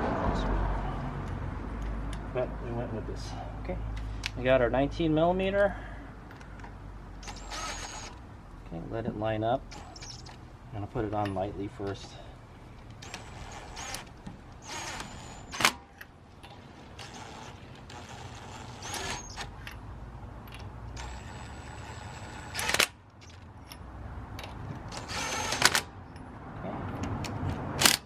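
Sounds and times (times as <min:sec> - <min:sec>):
impact wrench motor whine: 0:07.2 - 0:08.2, 0:13.0 - 0:15.8, 0:17.0 - 0:19.5, 0:25.0 - 0:25.8.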